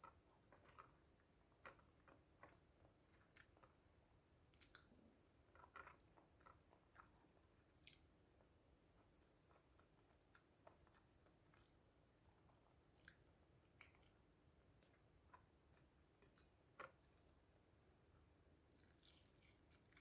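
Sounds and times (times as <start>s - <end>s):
close-up chewing: 0.0s - 20.0s.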